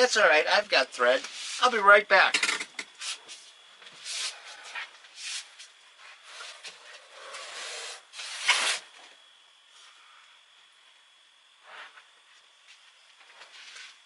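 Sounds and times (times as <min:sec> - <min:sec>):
rustling and scraping swishes: 0:01.2 - 0:01.8, 0:03.0 - 0:08.9.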